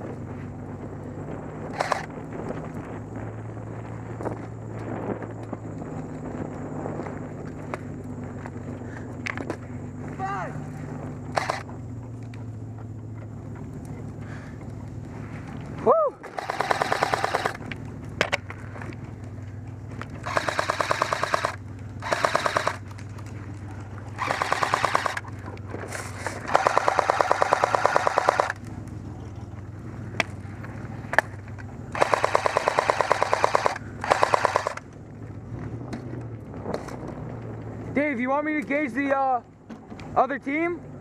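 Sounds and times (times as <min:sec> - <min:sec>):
truck engine humming: 0:00.0 - 0:41.0
airsoft rifle firing bursts: 0:01.8 - 0:02.1, 0:11.3 - 0:11.6, 0:16.3 - 0:17.6, 0:20.2 - 0:22.8, 0:24.2 - 0:25.3, 0:26.4 - 0:28.6, 0:31.9 - 0:34.8.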